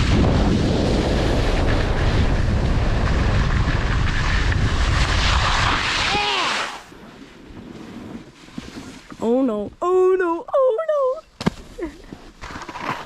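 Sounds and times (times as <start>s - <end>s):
wind buffeting microphone: 0.0s - 6.2s.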